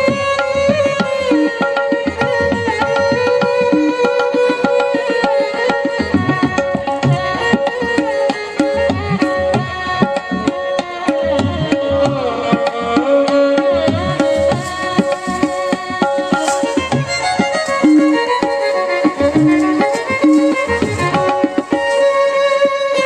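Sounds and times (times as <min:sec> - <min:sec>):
tabla drumming: 0:00.0 - 0:23.0
held melodic tones: 0:13.6 - 0:23.0.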